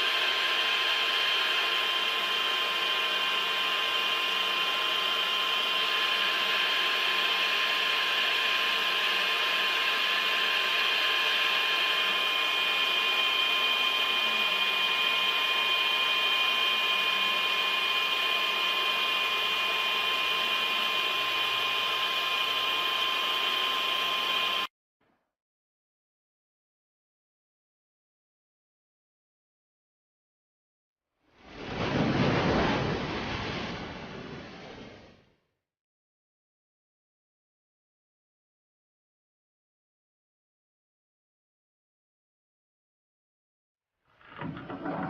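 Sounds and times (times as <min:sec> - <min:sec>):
machine tool whine: 0:00.0 - 0:24.7, 0:44.2 - 0:45.0.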